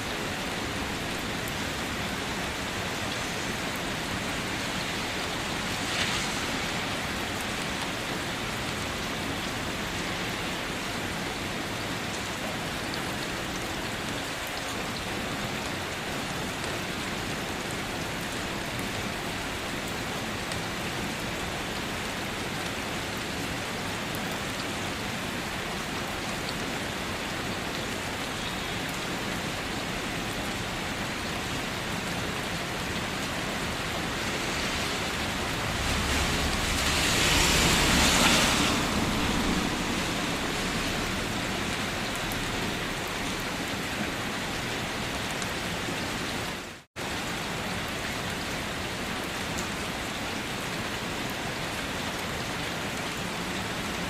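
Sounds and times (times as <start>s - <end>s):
steady rain: 0.0s - 54.0s
low rumble: 34.6s - 41.8s.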